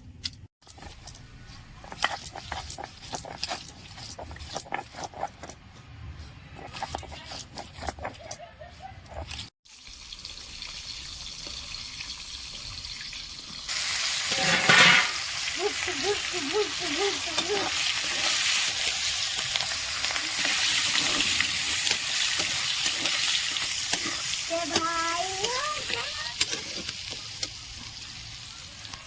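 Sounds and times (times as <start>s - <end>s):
food sizzling in hot oil: 9.6s - 29.0s.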